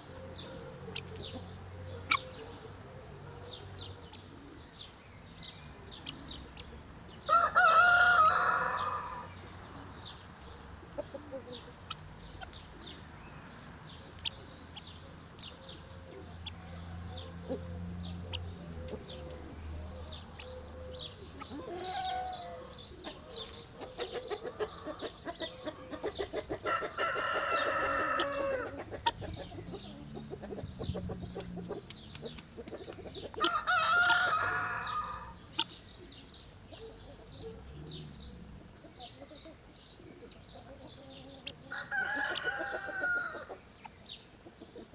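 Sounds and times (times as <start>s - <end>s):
chickens clucking: 0.0s - 44.9s
rooster crowing: 7.2s - 9.3s, 21.5s - 22.8s, 26.6s - 28.8s, 33.4s - 35.4s, 41.7s - 43.5s.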